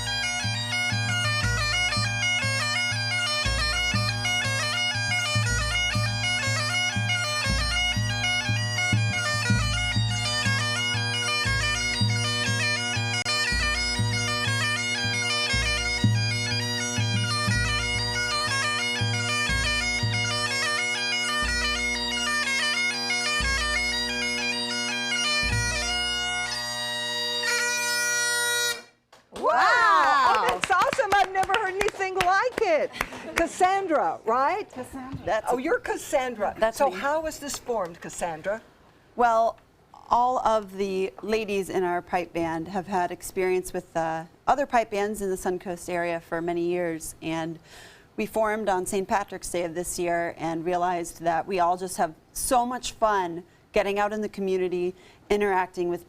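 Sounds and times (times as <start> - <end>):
drums beating: 0.0 - 26.5, 29.4 - 38.6
bagpipes playing a tune: 0.0 - 29.0.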